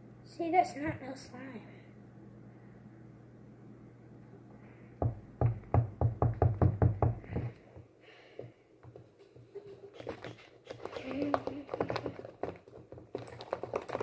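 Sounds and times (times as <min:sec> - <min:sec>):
rapid hard knocks: 0:05.0 - 0:07.6.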